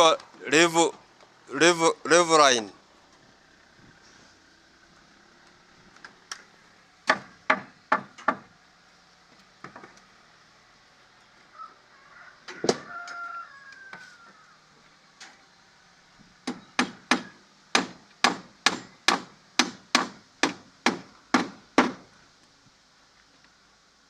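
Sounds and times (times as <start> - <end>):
hammer strikes: 7.0 - 8.4, 16.4 - 22.0.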